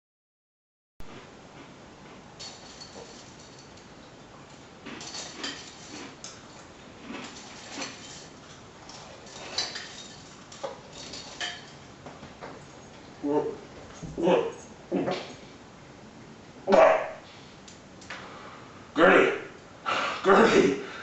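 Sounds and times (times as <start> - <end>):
small hard objects clinking: 2.4 - 4.0, 4.8 - 11.8.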